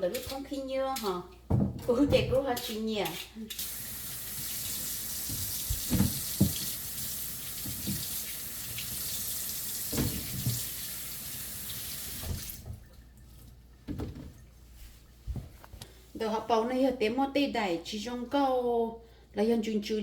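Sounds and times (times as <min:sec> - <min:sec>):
tap water running into sink: 0:03.5 - 0:13.2.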